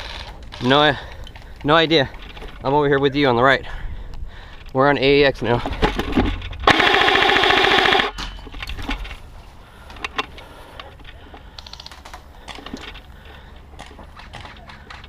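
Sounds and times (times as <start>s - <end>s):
airsoft gun full-auto burst: 6.7s - 8.1s.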